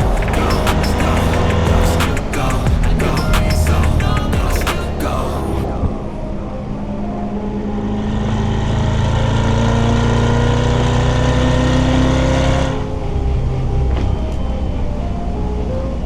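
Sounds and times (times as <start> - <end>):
sports car engine accelerating: 8.2 - 14.4.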